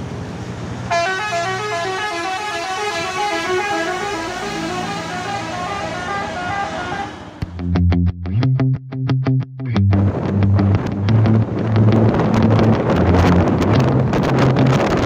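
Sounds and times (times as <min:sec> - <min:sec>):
musical air horn tune: 0:00.9 - 0:07.4
distorted guitar music: 0:07.4 - 0:15.0
low engine hum: 0:09.8 - 0:15.0.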